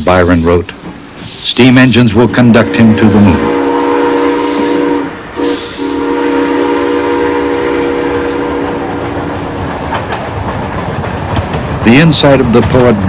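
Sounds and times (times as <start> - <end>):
train running noise: 0.0 - 13.0
steam locomotive whistle: 2.4 - 9.2.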